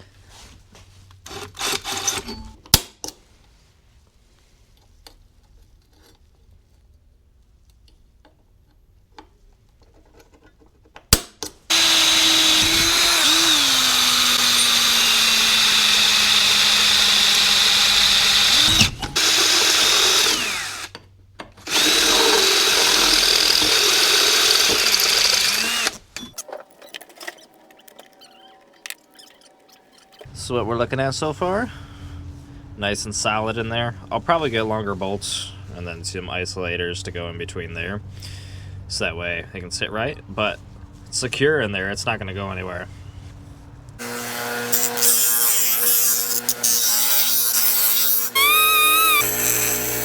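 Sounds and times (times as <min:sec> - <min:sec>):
electric drill running: 0:11.7 - 0:20.9, 0:21.7 - 0:30.2, 0:44.0 - 0:50.0.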